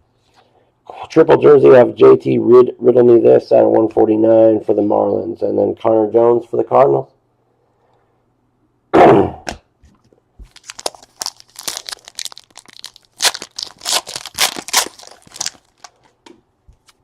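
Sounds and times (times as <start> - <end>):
foil wrapper tearing and crinkling: 10.5 - 16.1.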